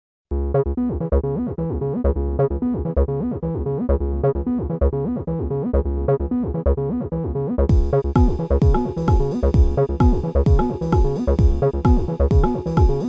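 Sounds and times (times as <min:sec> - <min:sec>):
electronic synthesizer music: 0:07.7 - 0:13.0.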